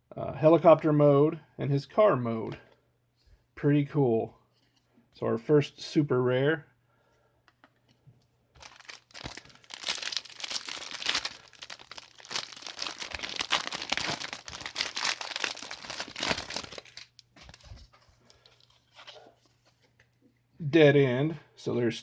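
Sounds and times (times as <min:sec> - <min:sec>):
wrapper tearing and crinkling: 0:08.6 - 0:18.7.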